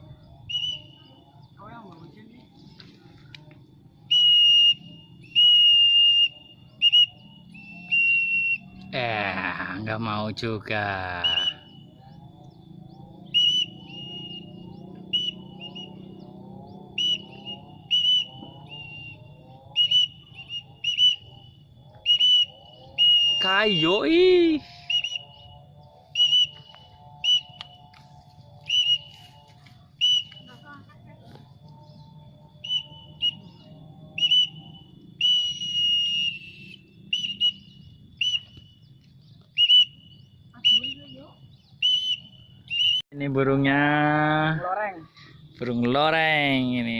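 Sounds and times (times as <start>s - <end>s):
high whistle blasts: 0.5s - 1.1s, 4.1s - 9.0s, 11.1s - 11.9s, 13.3s - 16.2s, 16.9s - 30.8s, 32.6s - 43.1s.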